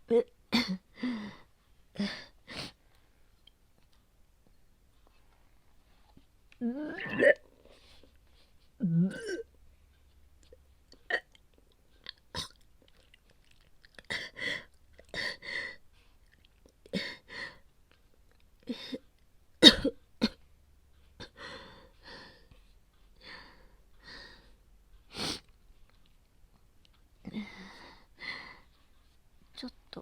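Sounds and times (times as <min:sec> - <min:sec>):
young woman coughing: 0:19.6 - 0:20.4.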